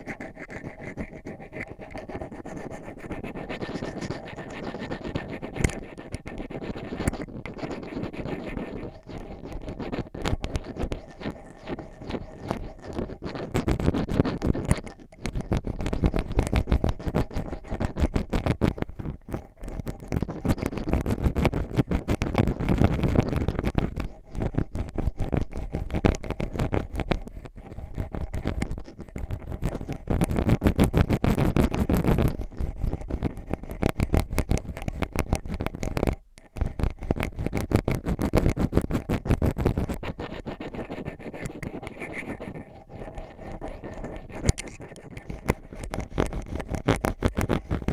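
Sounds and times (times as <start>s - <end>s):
ear pick scraping: 3.6s - 47.9s.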